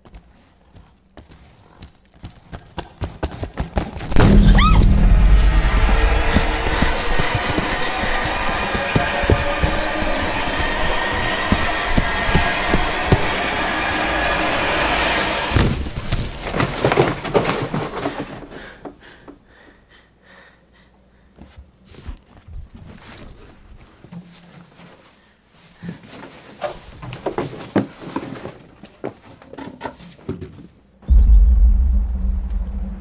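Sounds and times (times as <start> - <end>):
rustling handling noises: 21.4 - 30.8.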